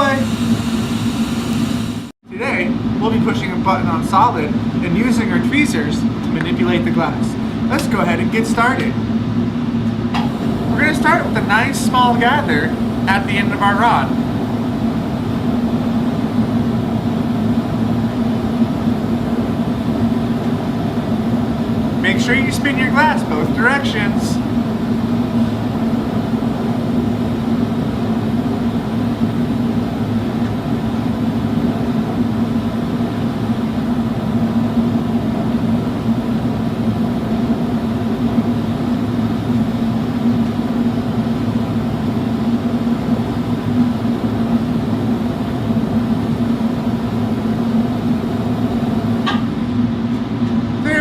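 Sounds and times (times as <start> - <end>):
torch burning with low hum: 0.0 - 2.6, 9.0 - 50.9.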